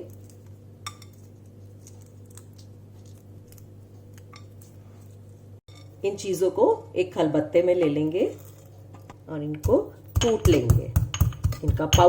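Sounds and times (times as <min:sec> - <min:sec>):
low electrical hum: 0:00.0 - 0:12.0
cardamom pods cracking open: 0:01.4 - 0:05.3.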